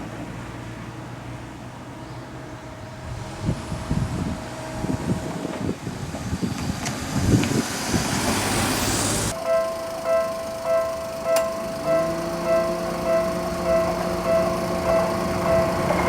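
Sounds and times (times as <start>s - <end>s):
road vehicle noise: 0.0s - 16.0s.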